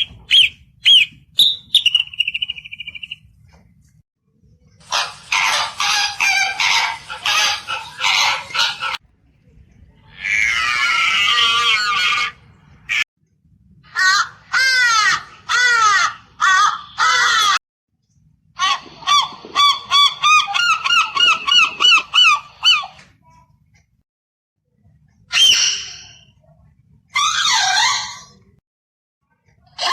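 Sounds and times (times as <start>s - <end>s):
goose honking: 4.9s - 9.0s.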